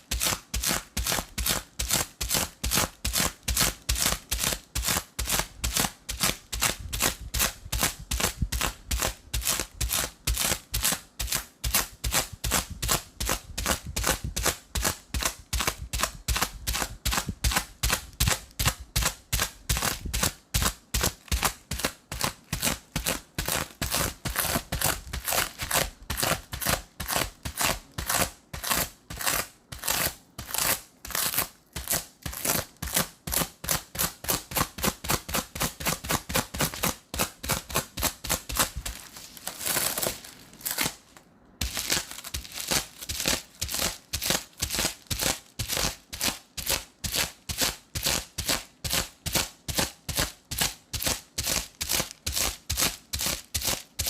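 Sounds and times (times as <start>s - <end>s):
soft rustle: 36.3s - 46.7s
sticky tape peeling off: 36.5s - 46.4s.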